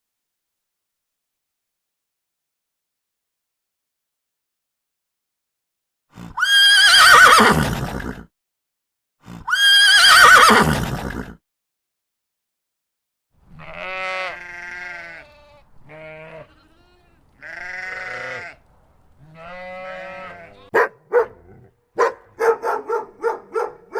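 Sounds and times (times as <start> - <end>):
goats bleating: 13.5 - 18.6, 19.2 - 20.8.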